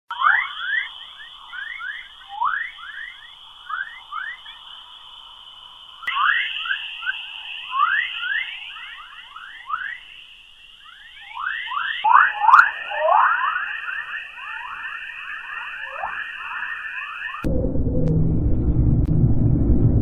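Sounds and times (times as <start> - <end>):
steady high tone: 6.1 - 20.0.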